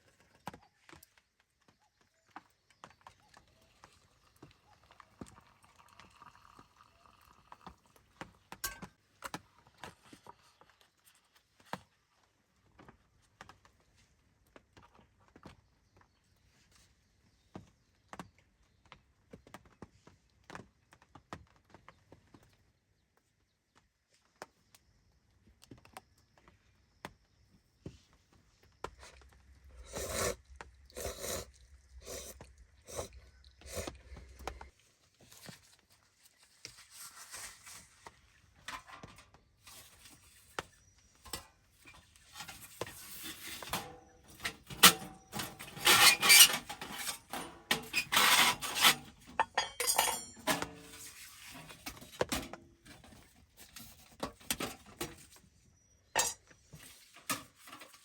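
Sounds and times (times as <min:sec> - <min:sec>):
cookware clinking and scraping: 0:08.6 - 0:08.9, 0:38.6 - 0:55.4, 0:56.2 - 0:58.0.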